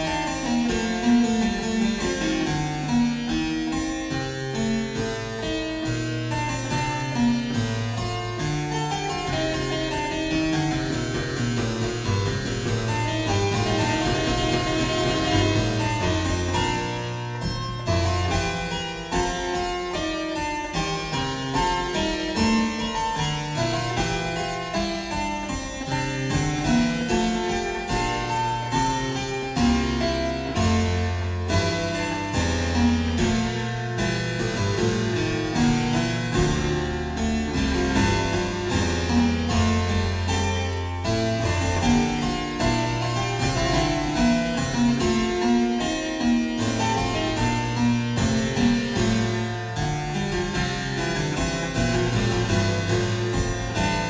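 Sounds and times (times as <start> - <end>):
keyboard playing a fugue: 0.0 - 54.0.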